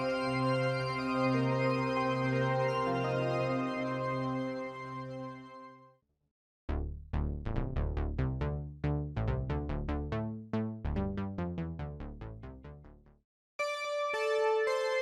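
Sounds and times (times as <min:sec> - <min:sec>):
plucky synthesizer notes: 0:06.7 - 0:15.0.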